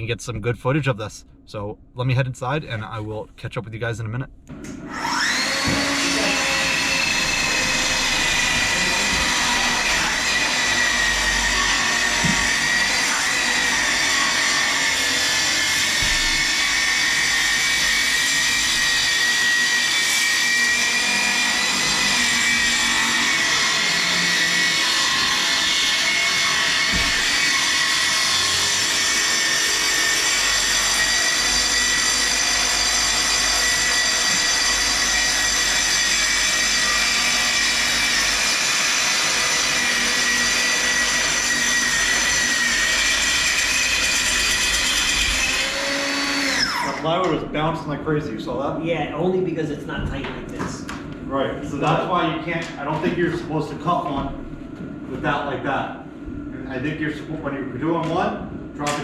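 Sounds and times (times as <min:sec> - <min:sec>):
dust extraction vacuum running: 0:04.5 - 0:55.8
track saw cutting plywood: 0:04.6 - 0:47.4.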